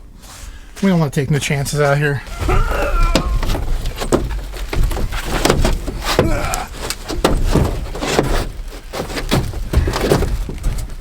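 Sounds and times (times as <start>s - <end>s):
sliding scrape: 2.3s - 10.2s
dirt bike clunking and rattling: 2.3s - 11.0s.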